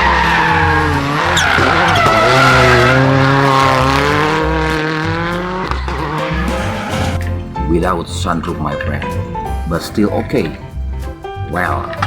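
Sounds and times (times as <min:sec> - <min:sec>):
race car engine: 0:00.0 - 0:07.6
pulsing background music: 0:00.0 - 0:12.0.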